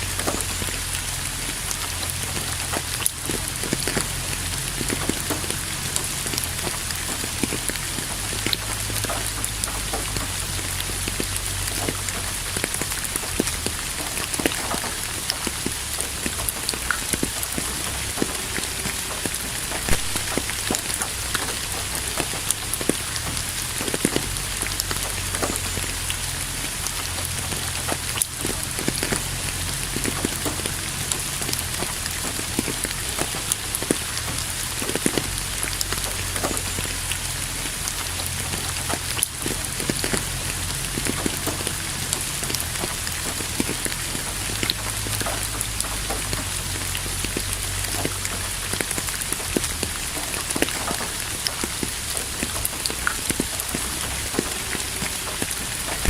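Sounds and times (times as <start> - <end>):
low steady rumble: 0.0 - 56.0
rain drops ticking on a surface: 0.0 - 56.0
rain hiss: 0.0 - 56.0.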